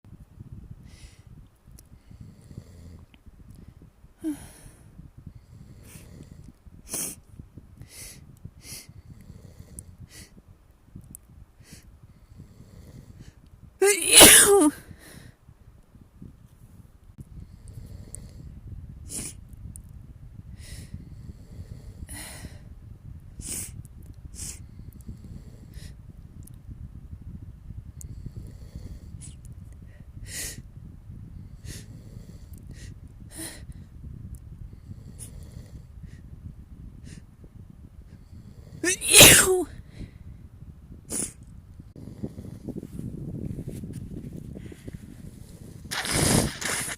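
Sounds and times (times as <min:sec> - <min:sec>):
person sniffing: 0:13.8 - 0:14.7, 0:38.8 - 0:39.7, 0:45.9 - 0:46.9
person sneezing: 0:13.8 - 0:14.8, 0:38.8 - 0:39.7
quick sniffing breaths: 0:19.1 - 0:19.4, 0:44.4 - 0:46.9
short sharp sniff: 0:41.1 - 0:41.4, 0:45.9 - 0:46.9.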